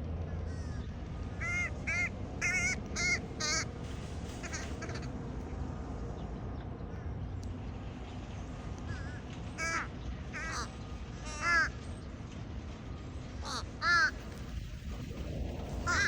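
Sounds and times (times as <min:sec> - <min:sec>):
steady low background noise: 0:00.0 - 0:16.0
bird calling: 0:00.5 - 0:03.7, 0:04.4 - 0:05.1, 0:08.8 - 0:12.1, 0:13.4 - 0:14.4.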